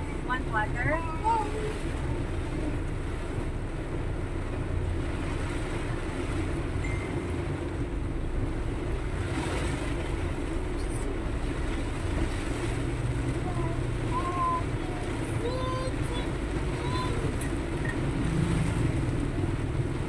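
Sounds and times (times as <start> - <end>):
vehicle engine and road noise: 0.0 - 20.0.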